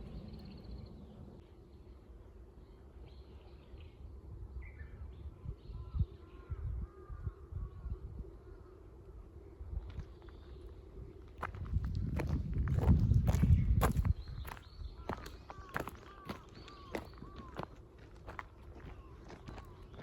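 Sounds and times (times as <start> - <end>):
small birds chirping: 9.8 - 20.0
footsteps on ground: 11.3 - 20.0.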